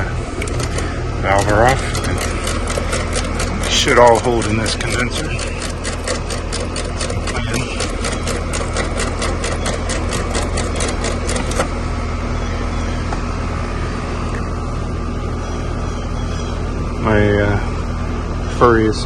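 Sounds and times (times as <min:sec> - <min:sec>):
rapid even clicking: 0:00.0 - 0:11.8
condensing unit humming: 0:00.0 - 0:19.0.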